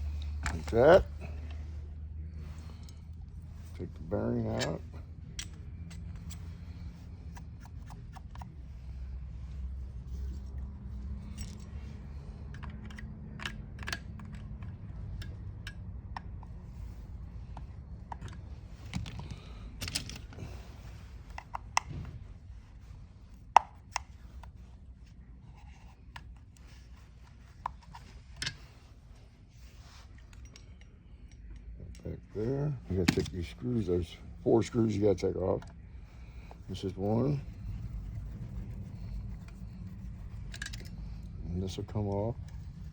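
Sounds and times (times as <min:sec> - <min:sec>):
steady low hum: 0:00.0 - 0:42.9
tools clicking against metal parts: 0:04.4 - 0:06.5, 0:11.2 - 0:16.6, 0:17.6 - 0:20.4, 0:40.3 - 0:42.6.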